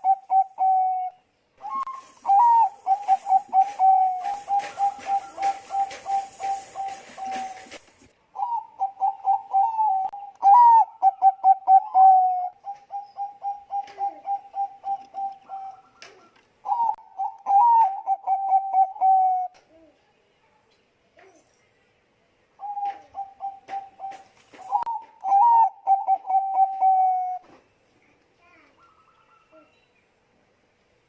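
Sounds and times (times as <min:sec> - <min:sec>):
dove cooing: 0:00.0 - 0:07.8, 0:08.4 - 0:19.9, 0:22.6 - 0:27.6.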